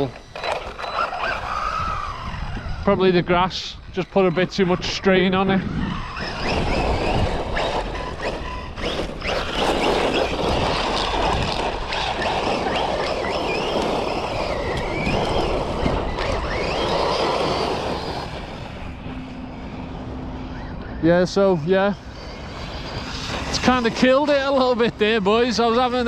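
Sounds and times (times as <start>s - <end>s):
electric motor whining: 0.0s - 26.0s
tyres scrabbling on gravel: 4.0s - 19.0s.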